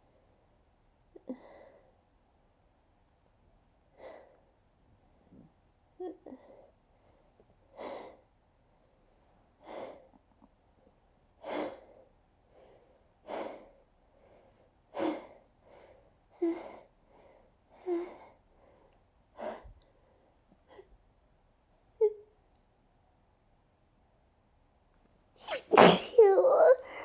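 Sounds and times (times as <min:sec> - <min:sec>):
person gasping before a sneeze: 0:25.4 - 0:27.0.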